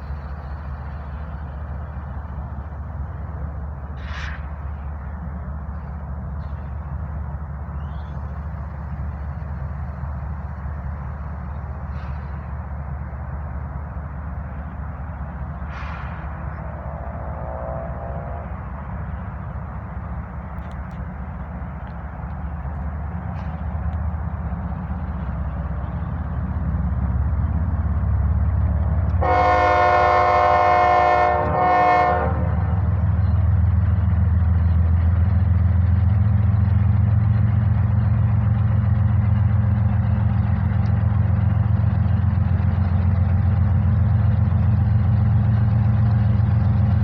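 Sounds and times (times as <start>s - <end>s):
diesel locomotives rumbling: 0.0s - 47.0s
locomotive air horn blasts: 29.2s - 32.9s.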